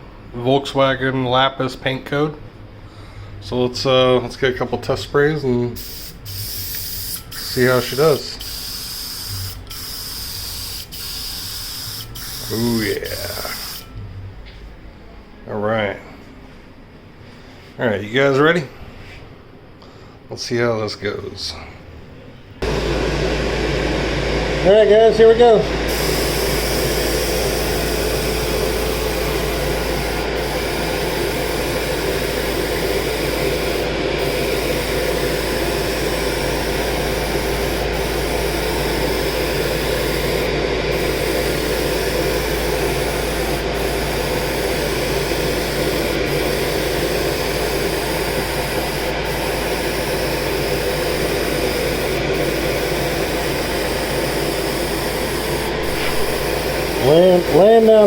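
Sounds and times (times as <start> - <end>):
spray gun hissing: 5.8 - 13.9, 25.6 - 58.0.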